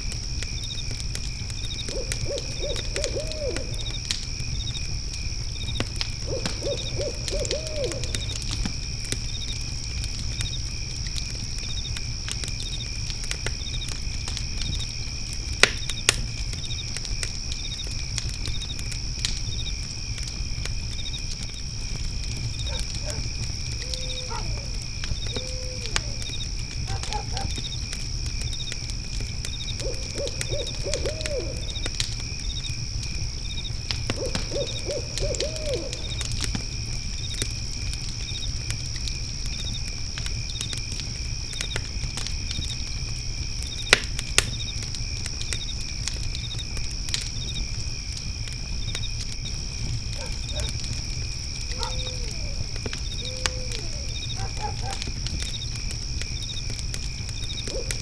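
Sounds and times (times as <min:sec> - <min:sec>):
crickets trilling: 0:00.0 - 0:58.0
fire crackling and popping: 0:00.0 - 0:58.0
owl hooting: 0:01.9 - 0:03.9, 0:06.2 - 0:08.4, 0:22.7 - 0:26.3, 0:26.9 - 0:27.6, 0:29.8 - 0:31.8, 0:34.2 - 0:36.2, 0:51.7 - 0:55.0, 0:57.7 - 0:58.0.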